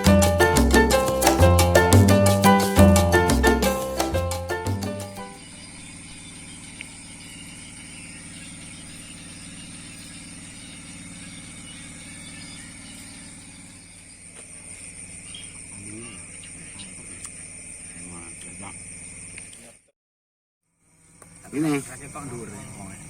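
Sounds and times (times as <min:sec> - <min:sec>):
high-pitched insect drone: 0:00.0 - 0:19.7, 0:20.8 - 0:23.0
low motor hum: 0:05.2 - 0:19.3.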